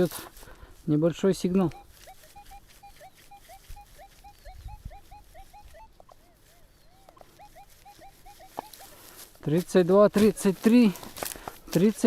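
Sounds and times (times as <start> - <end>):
metal detector chirping beeps: 1.4 - 9.6.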